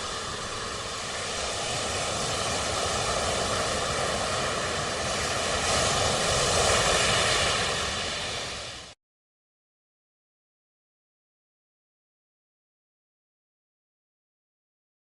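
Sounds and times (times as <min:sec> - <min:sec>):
steady rushing roar: 0:00.0 - 0:09.0.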